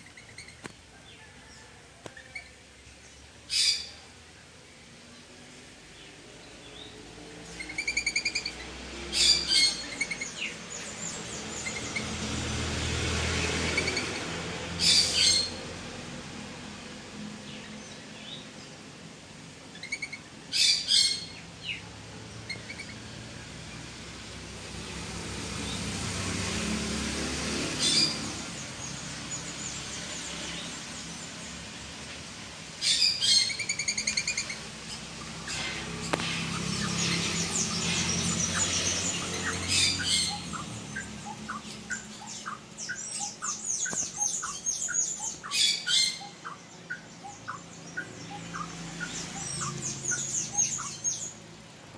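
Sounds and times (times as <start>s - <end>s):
bird rattling chatter and calls: 32.8s - 51.4s.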